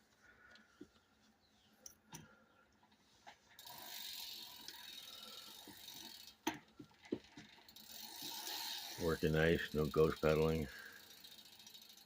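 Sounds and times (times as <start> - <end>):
bicycle freewheel ratcheting: 3.6 - 12.0.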